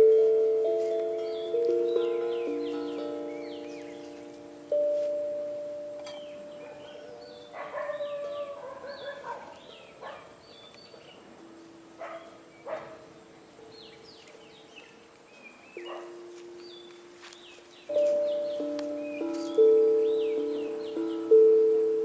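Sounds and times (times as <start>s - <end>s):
soft held musical notes: 0.0s - 8.6s, 9.4s - 22.0s
birds chirping: 0.0s - 22.0s
dog barking: 6.6s - 11.2s, 12.0s - 13.1s, 15.8s - 16.2s.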